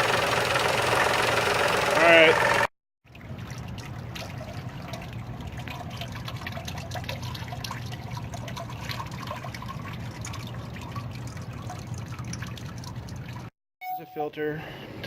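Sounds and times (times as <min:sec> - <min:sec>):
liquid trickling: 0:03.0 - 0:13.5.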